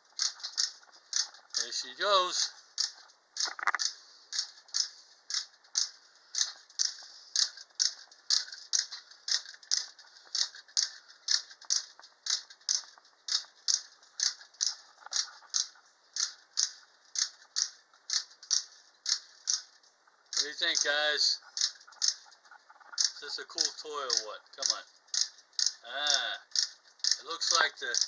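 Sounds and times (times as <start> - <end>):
wind-up toy tin clicks: 0.2 - 22.3, 23.0 - 28.0.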